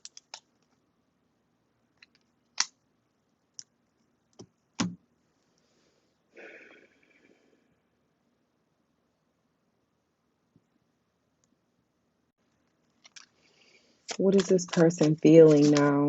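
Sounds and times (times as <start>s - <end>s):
cards rustling: 12.9s - 16.0s
cards clicking on a table: 14.1s - 16.0s.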